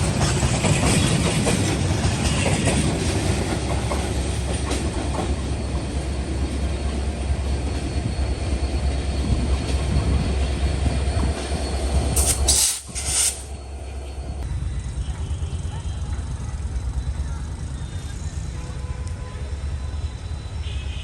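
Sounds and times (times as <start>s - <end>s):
wheels rattling over track: 0.0s - 14.4s
passenger train rumbling past: 0.0s - 21.0s.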